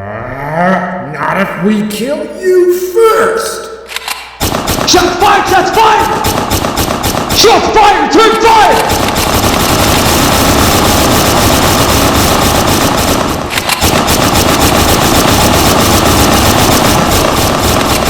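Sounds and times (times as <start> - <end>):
rapid automatic gunfire: 4.4 - 18.0.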